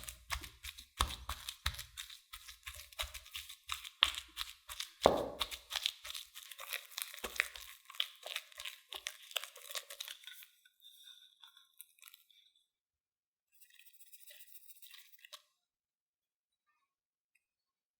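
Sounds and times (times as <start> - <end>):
food crunching and crackling: 0.0 - 10.6.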